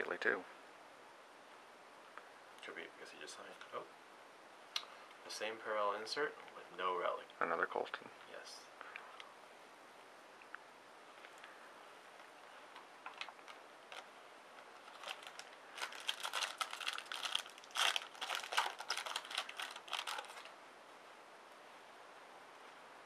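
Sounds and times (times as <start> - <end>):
wrapper clicks: 12.7 - 20.5
wrapper crinkling: 12.7 - 20.5.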